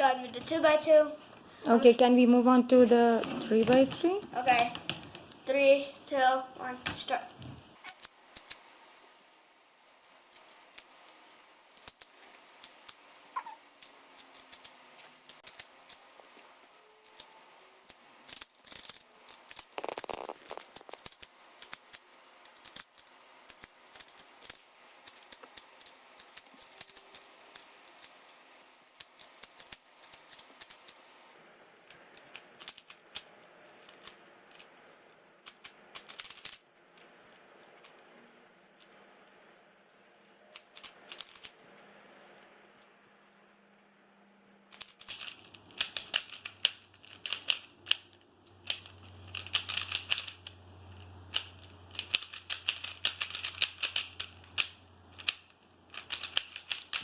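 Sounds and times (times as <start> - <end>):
puzzle cube plastic clicks: 7.8 - 8.8, 9.9 - 16.4, 17.0 - 28.4, 29.0 - 31.0, 31.8 - 34.8, 35.4 - 38.1, 38.8 - 42.5, 44.7 - 50.6, 51.3 - 57.0.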